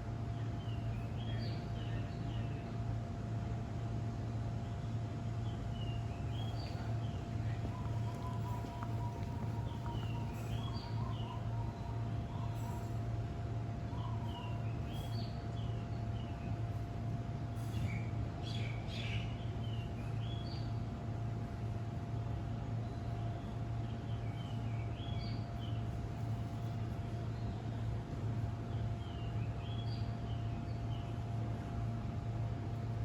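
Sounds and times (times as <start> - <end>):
faint steady whine: 0.0 - 33.0
low mechanical hum: 0.0 - 33.0
bird singing chirps: 5.8 - 12.6.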